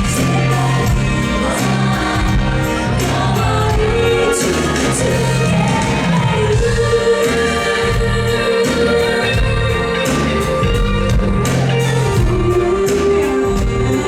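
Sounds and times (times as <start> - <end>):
backing vocals: 0.0 - 14.0
band with drums: 0.0 - 14.0
woman singing lead vocal: 0.0 - 14.0.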